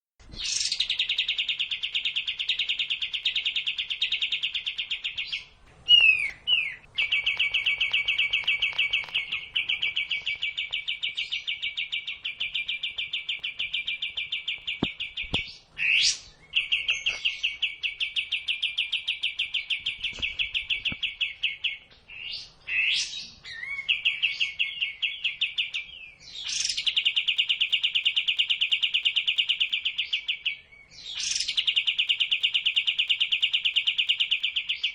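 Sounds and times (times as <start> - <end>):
songbird rattling trills: 0.5 - 21.3.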